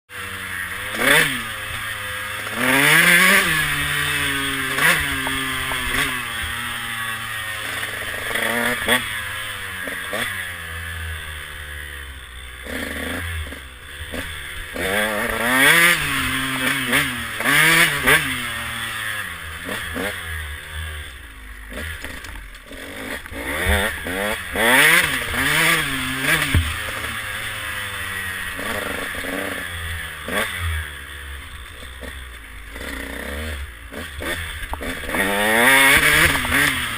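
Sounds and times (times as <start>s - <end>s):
dirt bike engine revving: 0.1s - 36.9s.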